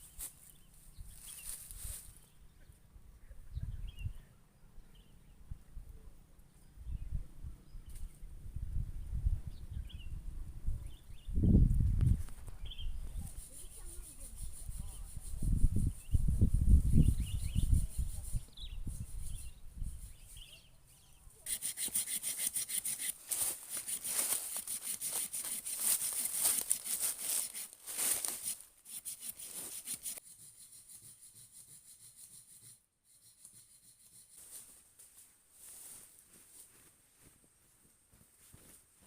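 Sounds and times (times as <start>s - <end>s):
hand saw cutting wood: 21.4s - 34.5s.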